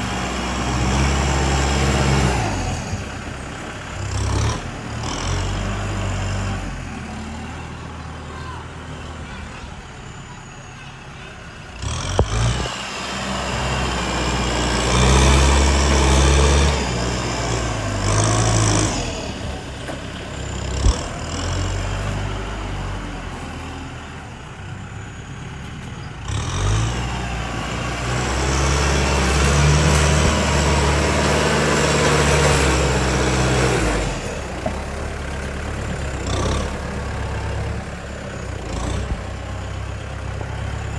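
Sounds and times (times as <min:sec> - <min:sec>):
heavy diesel engines revving: 0:00.0 - 0:40.9.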